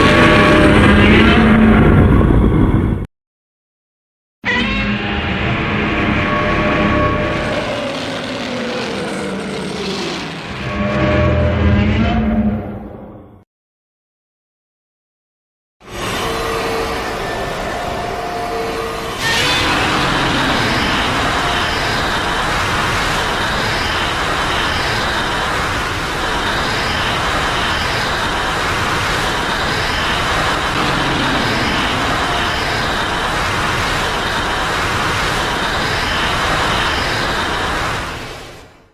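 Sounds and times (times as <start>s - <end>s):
loud rushing blast: 6.0s - 11.6s, 19.1s - 38.5s.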